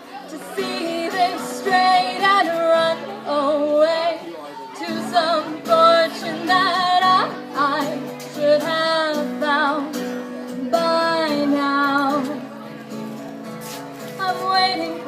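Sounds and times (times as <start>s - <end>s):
person singing with vibrato: 0.3s - 10.0s.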